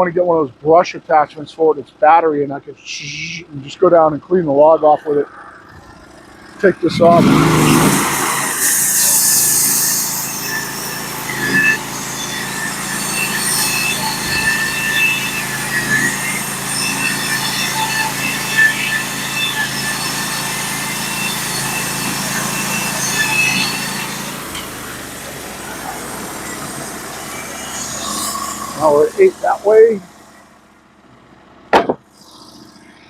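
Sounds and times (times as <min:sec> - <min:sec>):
sawmill engine hum: 0:00.0 - 0:33.0
saw blade metallic singing: 0:02.9 - 0:03.5.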